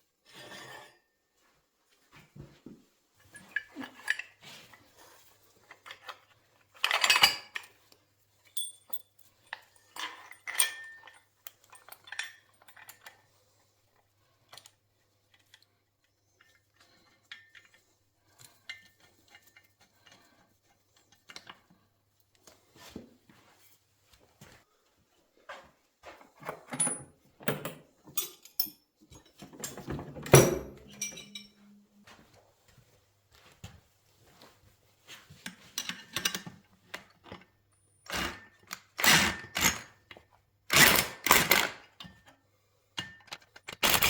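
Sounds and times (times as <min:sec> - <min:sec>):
metal tools clinking and clanking: 0:03.3 - 0:04.4, 0:06.8 - 0:07.8, 0:08.5 - 0:13.2, 0:26.4 - 0:32.0.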